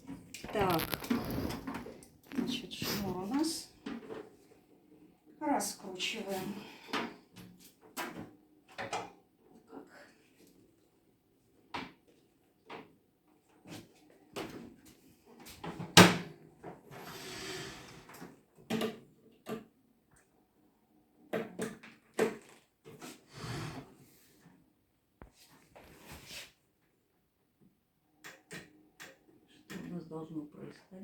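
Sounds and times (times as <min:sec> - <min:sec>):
rustling: 0:00.3 - 0:03.4.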